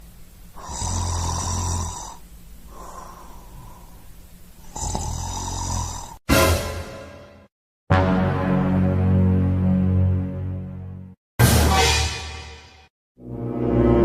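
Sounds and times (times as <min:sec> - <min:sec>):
person snoring: 0:00.6 - 0:04.0, 0:04.6 - 0:06.2
breath out: 0:02.7 - 0:04.0.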